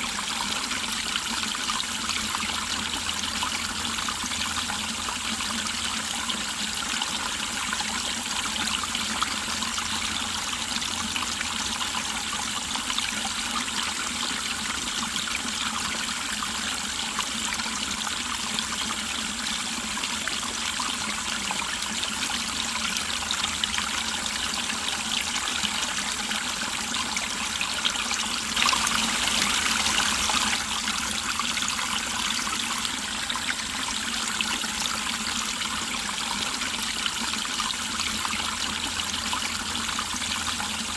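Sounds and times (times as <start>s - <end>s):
stream flowing over rocks: 18.6s - 40.9s.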